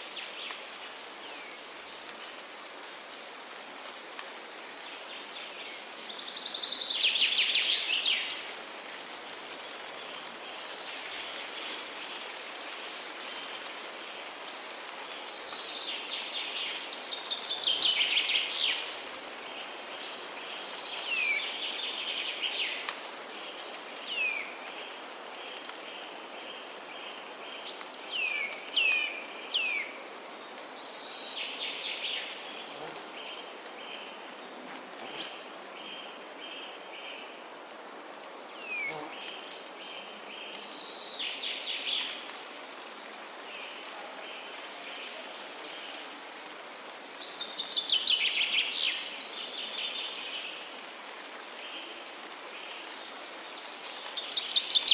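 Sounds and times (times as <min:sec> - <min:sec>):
steady background hiss: 0:00.0 - 0:54.9.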